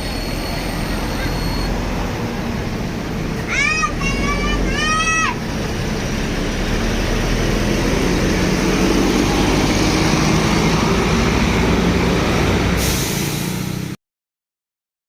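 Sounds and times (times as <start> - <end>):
bus engine running: 0.0 - 14.0
road noise: 0.0 - 14.0.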